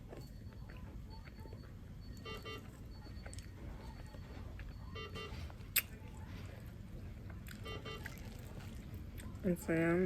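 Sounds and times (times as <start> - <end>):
patient monitor multi-tone beeps: 0.0 - 5.7, 7.6 - 8.3
low steady hum: 0.0 - 10.0.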